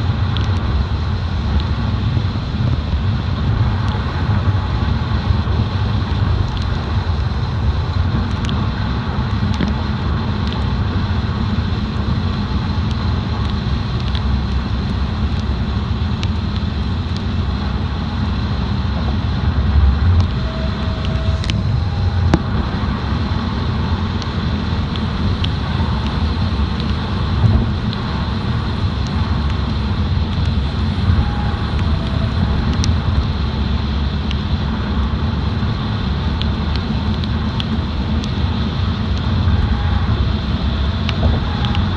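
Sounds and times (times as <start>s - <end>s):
car road and engine rumble: 0.0s - 41.9s.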